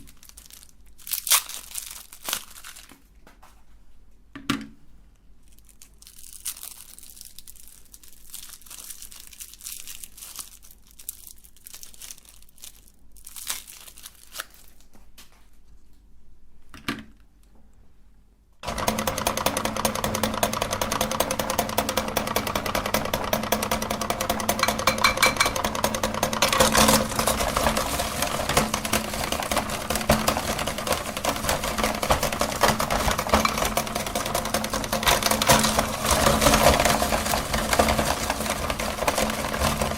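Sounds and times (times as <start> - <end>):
hard candy being crushed: 0.0 - 3.2, 5.4 - 15.3, 18.6 - 39.9
plastic wrapping crinkling: 0.0 - 3.8, 5.4 - 16.1, 25.0 - 39.9
electric meat grinder humming: 18.6 - 39.9.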